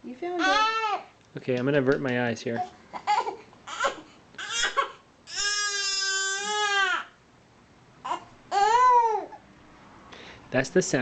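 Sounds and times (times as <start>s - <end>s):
baby crying: 0.4s - 1.1s, 2.6s - 7.2s, 8.0s - 9.4s.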